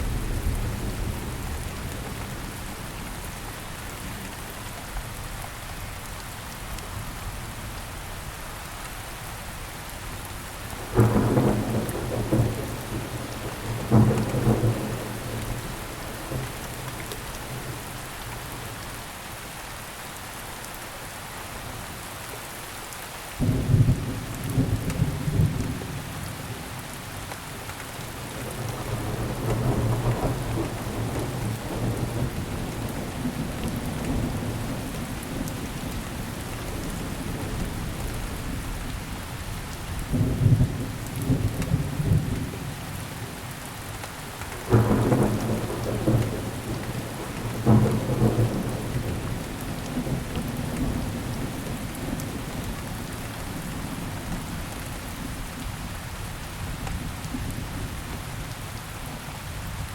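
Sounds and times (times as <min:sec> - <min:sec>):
steady rain: 0:00.0 - 0:59.9
thunder rumbling: 0:10.9 - 0:17.9, 0:28.3 - 0:39.0, 0:44.6 - 0:54.1.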